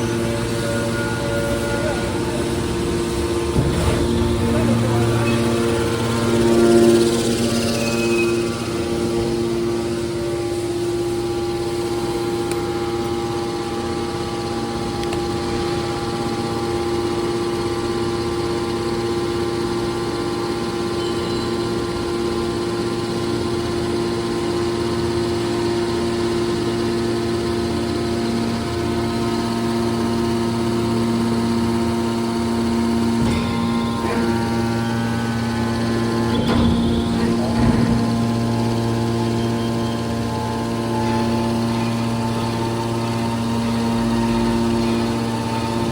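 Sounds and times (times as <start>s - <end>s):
baler motor humming: 0.0s - 10.7s, 31.4s - 45.9s.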